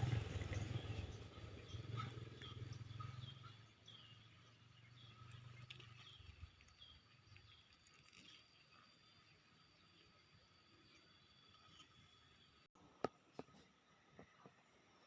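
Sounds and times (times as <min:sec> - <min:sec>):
passing motor vehicle rumble: 0:00.0 - 0:06.0
faint bird chirping: 0:00.0 - 0:12.7.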